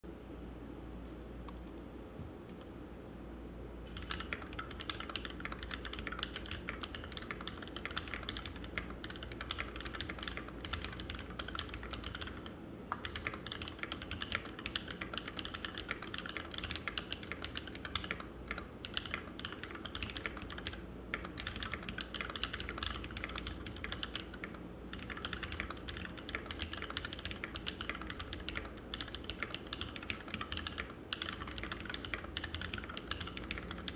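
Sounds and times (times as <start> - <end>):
low steady hum: 0.0 - 33.9
fast keyboard typing: 3.9 - 33.9.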